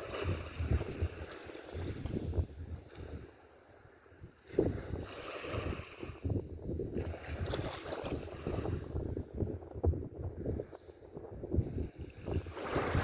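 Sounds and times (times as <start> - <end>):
wind buffeting microphone: 0.0 - 3.4, 4.1 - 13.0
sea water washing: 12.0 - 13.0.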